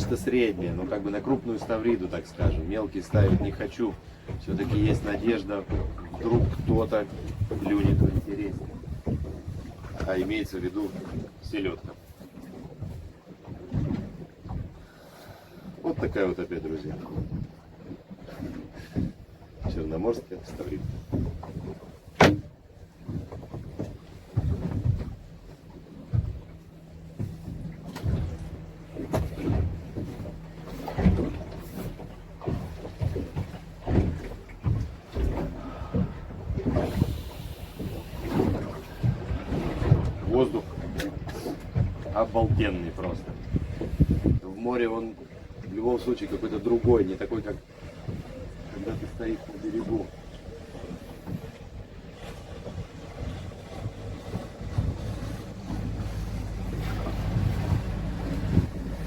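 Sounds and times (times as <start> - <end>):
wind buffeting microphone: 0.0 - 15.0, 15.6 - 45.8, 46.5 - 59.0
knocks and thumps on boat: 0.0 - 59.0
water sloshing against hull: 0.0 - 59.0
wind on microphone: 30.9 - 44.6, 49.8 - 59.0
low motor drone: 52.4 - 59.0.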